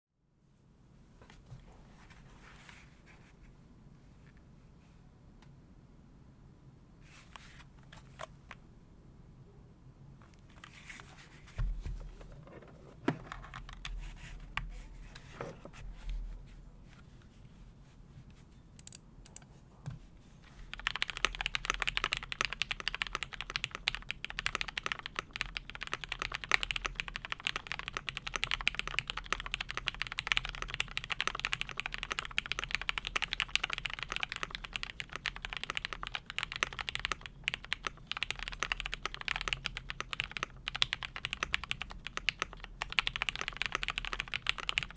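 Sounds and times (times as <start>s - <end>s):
mechanical keyboard typing: 18.8s - 19.4s, 20.7s - 44.9s.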